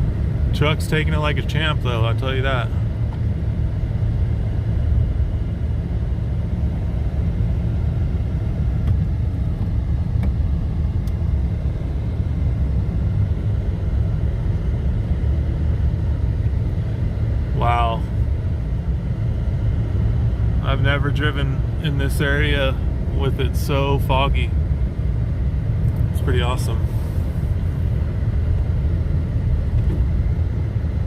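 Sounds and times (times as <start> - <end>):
pickup engine rumble: 0.0 - 31.0
tyre noise on snowy road: 26.0 - 31.0.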